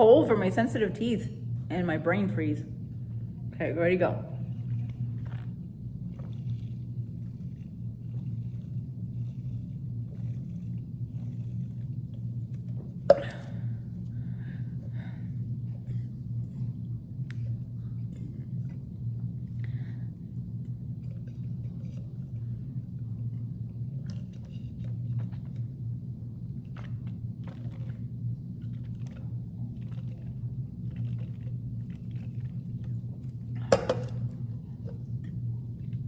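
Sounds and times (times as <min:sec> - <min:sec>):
low hum: 0:00.0 - 0:36.0
sipping through a straw: 0:04.4 - 0:25.8.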